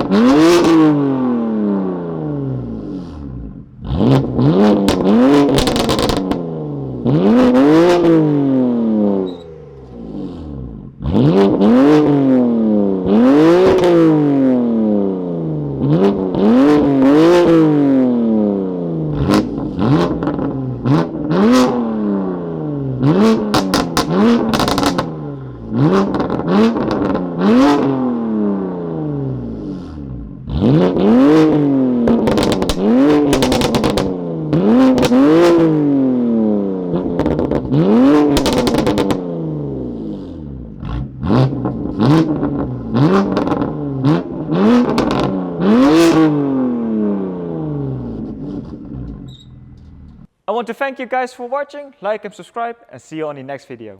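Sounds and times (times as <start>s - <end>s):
car engine revving: 0.0s - 50.3s
exhaust pops and crackles: 4.1s - 6.5s, 19.2s - 21.7s, 23.2s - 27.9s, 30.8s - 35.6s, 37.0s - 39.3s, 40.8s - 45.4s.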